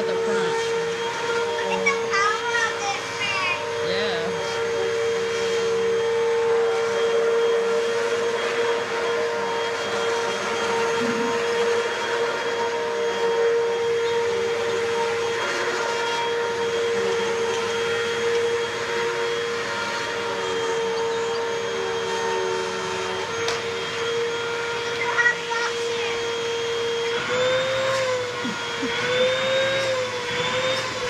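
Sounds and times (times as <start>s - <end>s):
vacuum cleaner running: 0.0s - 31.0s.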